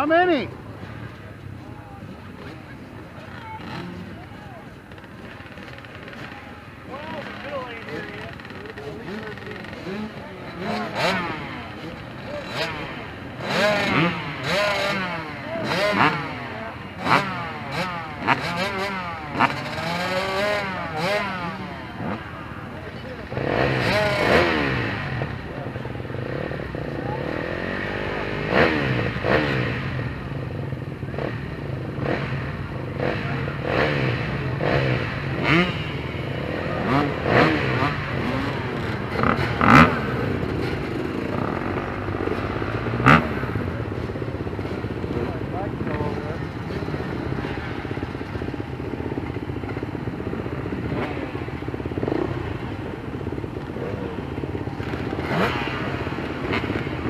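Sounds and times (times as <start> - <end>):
dirt bike engines revving: 0.0 - 57.0.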